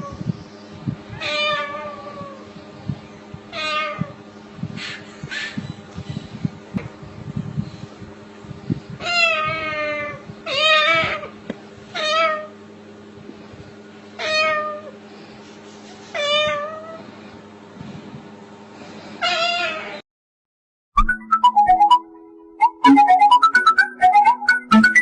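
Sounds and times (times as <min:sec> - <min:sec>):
cat meowing: 0:01.2 - 0:02.4, 0:03.6 - 0:04.2, 0:09.0 - 0:11.3, 0:12.0 - 0:12.5, 0:14.2 - 0:14.9, 0:16.1 - 0:17.0, 0:19.2 - 0:20.0.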